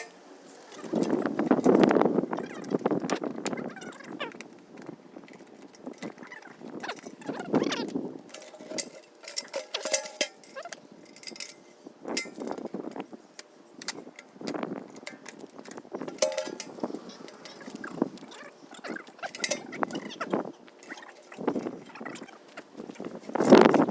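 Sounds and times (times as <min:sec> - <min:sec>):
sheet metal ringing: 0:00.0 - 0:00.2, 0:16.1 - 0:17.6
metal pail clinks and scrapes: 0:00.0 - 0:01.9, 0:08.3 - 0:13.0, 0:14.9 - 0:18.0, 0:18.8 - 0:23.9.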